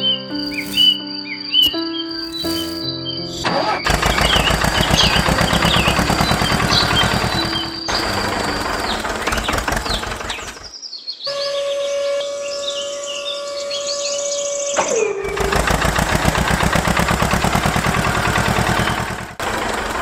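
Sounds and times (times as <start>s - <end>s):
birds chirping: 0.0s - 15.4s, 18.3s - 19.3s
small engine chugging: 3.9s - 10.7s, 15.2s - 20.0s.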